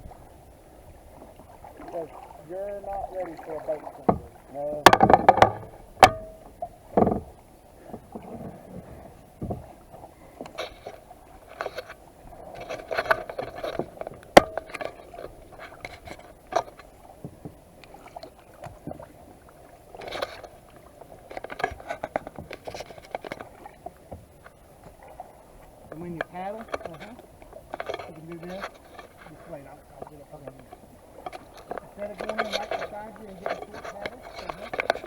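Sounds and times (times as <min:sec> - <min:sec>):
paddle splashing in water: 0:00.0 - 0:35.0
sharp knock: 0:04.9 - 0:06.5.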